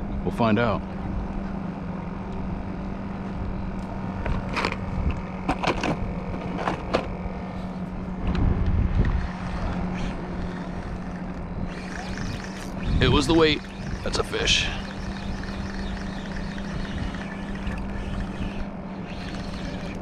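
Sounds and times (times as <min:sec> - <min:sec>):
wind noise on microphone: 0:08.2 - 0:20.0
electric motor humming: 0:08.8 - 0:20.0.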